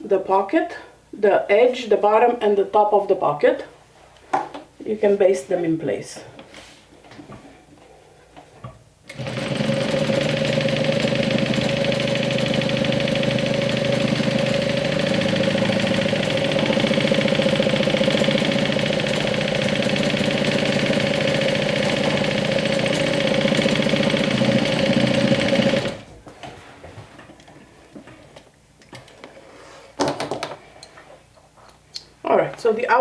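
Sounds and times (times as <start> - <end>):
sewing machine stitching: 9.1 - 26.1.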